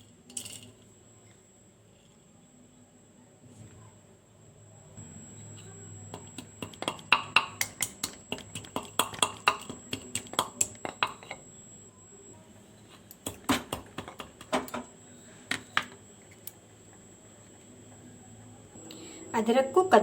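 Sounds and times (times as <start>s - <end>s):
pestle knocking in a mortar: 6.1s - 11.3s, 13.2s - 14.8s.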